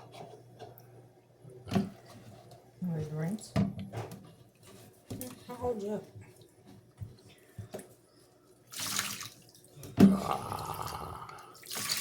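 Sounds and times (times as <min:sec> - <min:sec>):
tap water running: 0:08.7 - 0:10.2, 0:10.8 - 0:12.0.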